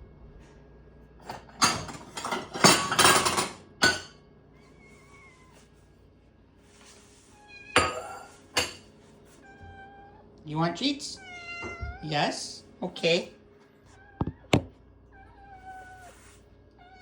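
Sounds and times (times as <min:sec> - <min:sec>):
cat meowing: 0:04.6 - 0:05.7, 0:09.4 - 0:10.3, 0:11.1 - 0:12.1, 0:13.9 - 0:17.0.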